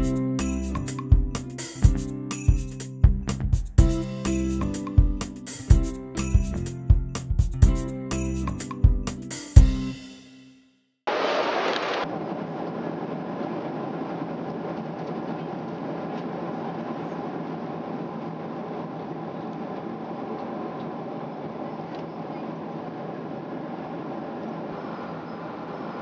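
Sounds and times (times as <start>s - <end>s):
airplane engines and airflow roar: 11.2s - 26.0s.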